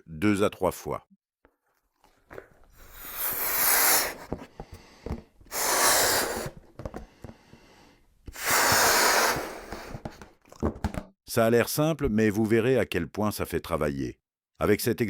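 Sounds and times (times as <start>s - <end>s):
person blowing into a balloon: 2.6s - 10.3s.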